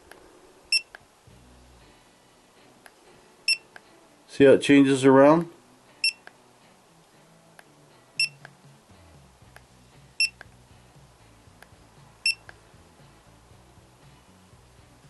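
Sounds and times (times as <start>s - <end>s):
laser tape measure beeping: 0.7s - 1.0s, 3.5s - 3.7s, 6.0s - 6.3s, 8.2s - 8.4s, 10.2s - 10.4s, 12.2s - 12.4s.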